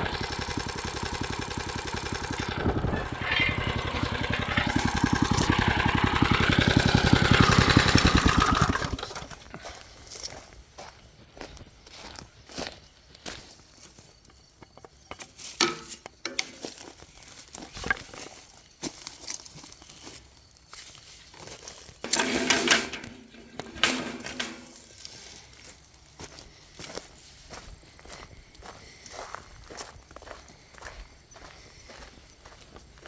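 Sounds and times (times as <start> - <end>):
low pitched tone: 0.0 - 9.0
footsteps crunching dry leaves: 16.5 - 22.6, 23.2 - 33.0.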